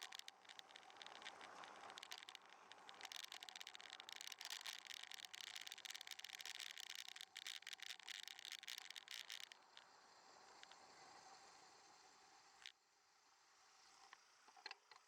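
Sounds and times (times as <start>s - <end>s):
crackling rubbing camera vibration: 0.0s - 9.9s
small ticks: 0.0s - 11.4s
faint steady hiss: 0.0s - 15.0s.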